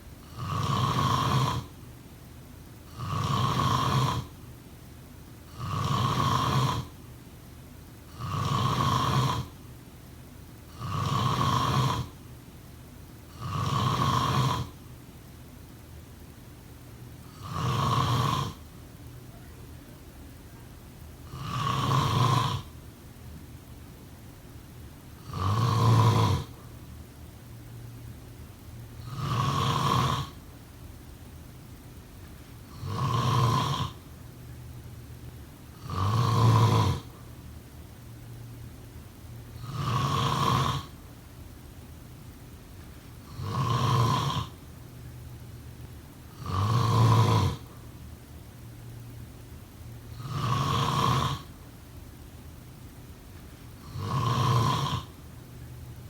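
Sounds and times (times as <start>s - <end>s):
person snoring: 0.2s - 1.8s, 2.9s - 4.4s, 5.5s - 7.0s, 8.1s - 9.6s, 10.7s - 12.2s, 13.3s - 14.8s, 17.2s - 18.6s, 21.2s - 22.8s, 25.2s - 26.7s, 29.0s - 30.4s, 32.7s - 34.0s, 35.8s - 37.2s, 39.6s - 41.0s, 43.2s - 44.7s, 46.3s - 47.8s, 50.1s - 51.6s, 53.8s - 55.2s.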